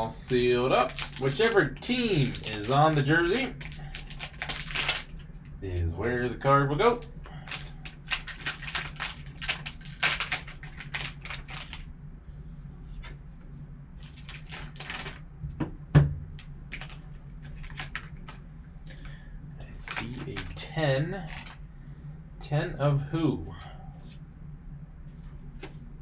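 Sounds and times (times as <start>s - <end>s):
card pack packaging crinkling: 0.0s - 5.2s, 6.9s - 11.9s, 14.0s - 15.2s, 16.7s - 18.4s, 19.9s - 20.6s, 21.2s - 21.6s.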